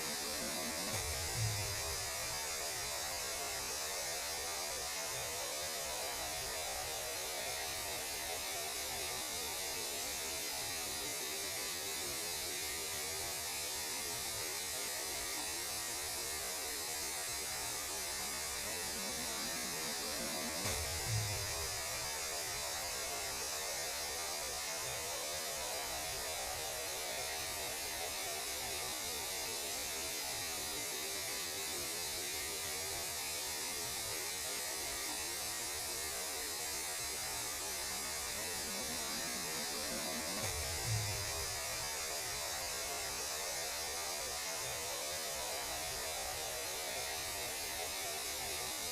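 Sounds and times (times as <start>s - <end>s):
static hiss: 0.0s - 48.9s
low hum: 20.2s - 21.8s.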